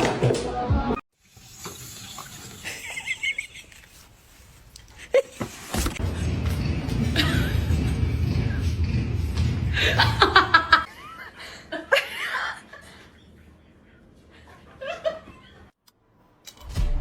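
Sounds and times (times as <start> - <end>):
people laughing: 2.6 - 4.0, 6.8 - 8.7, 9.6 - 15.7.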